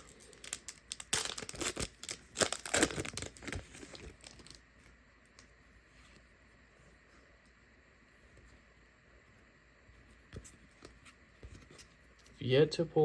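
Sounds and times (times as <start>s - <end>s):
packaging being ripped open: 0.0s - 4.6s.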